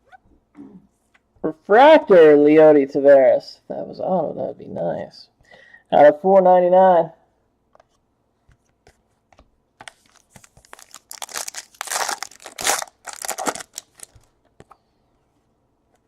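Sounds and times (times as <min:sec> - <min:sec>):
card pack wrapper tearing: 0:09.9 - 0:14.3.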